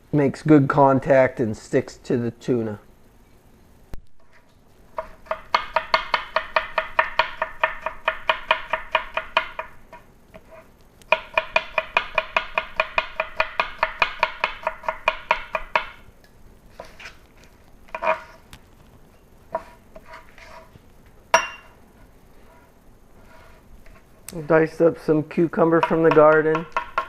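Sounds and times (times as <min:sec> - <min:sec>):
knife chopping on cutting board: 0:25.8 - 0:27.0.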